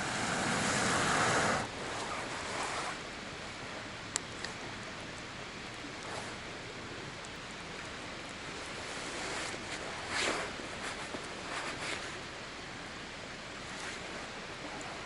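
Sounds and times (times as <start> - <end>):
outdoor rushing noise: 0.0 - 3.0.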